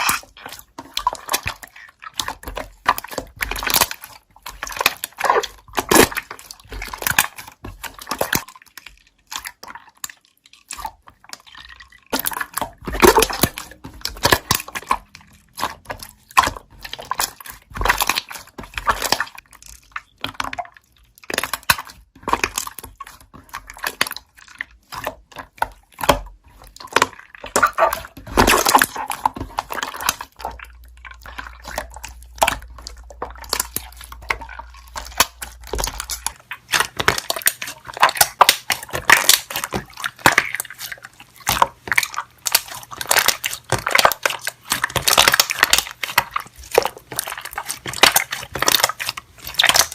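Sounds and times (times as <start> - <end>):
slime air bubbles popping: 12.1 - 19.4, 26.0 - 49.9.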